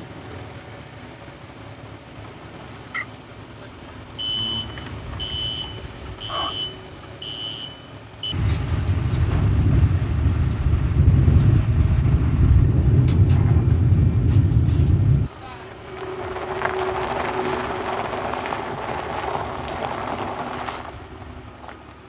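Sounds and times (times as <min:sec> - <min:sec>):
low engine rumble: 0:00.0 - 0:22.0
reversing alarm beeping: 0:02.9 - 0:03.1, 0:04.2 - 0:08.5.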